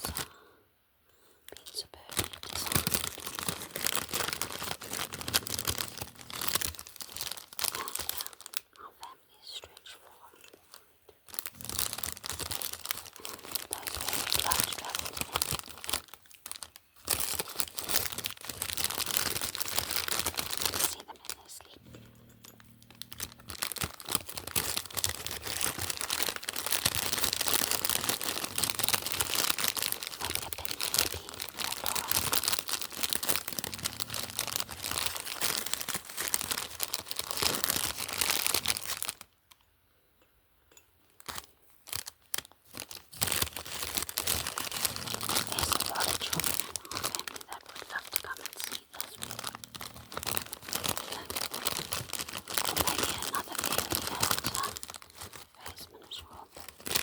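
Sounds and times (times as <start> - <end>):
packaging crinkling and tearing: 0.0 - 0.3, 1.6 - 8.8, 9.7 - 39.6, 41.2 - 57.0.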